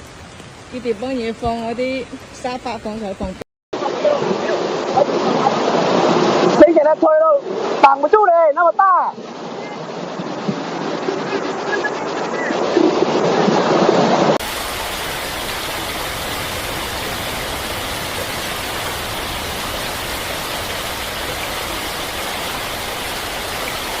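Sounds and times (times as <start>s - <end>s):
steady hiss: 14.4s - 24.0s.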